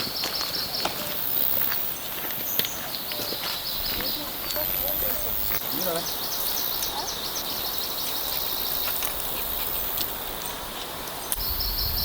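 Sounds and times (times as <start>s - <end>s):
steady forest hiss: 0.0s - 12.0s.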